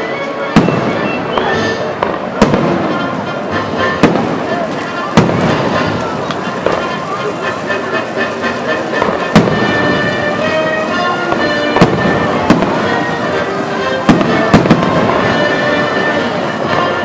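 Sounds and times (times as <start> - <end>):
music playing: 0.0 - 17.0
fireworks bangs: 0.2 - 17.0.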